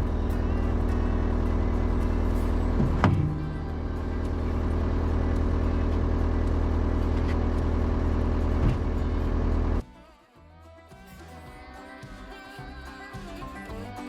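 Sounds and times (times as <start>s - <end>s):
skid steer engine running: 0.0s - 9.9s.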